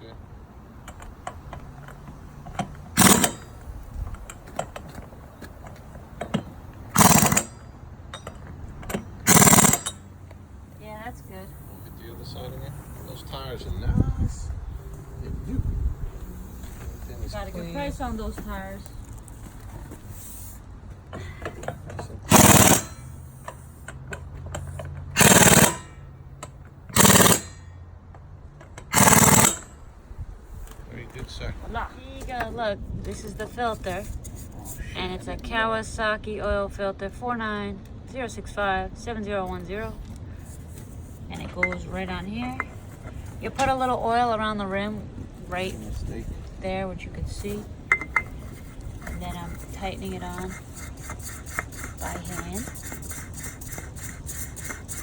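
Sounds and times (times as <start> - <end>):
impact wrench bursts: 0.6 - 13.6, 14.3 - 27.8, 28.6 - 30.1, 39.7 - 45.7, 47.4 - 55.0.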